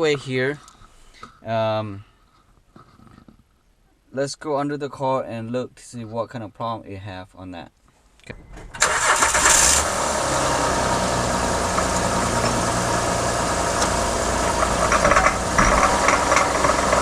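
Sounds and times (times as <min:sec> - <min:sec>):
grinding knocking driveline rattle: 0:08.4 - 0:17.0
car engine running: 0:08.8 - 0:17.0.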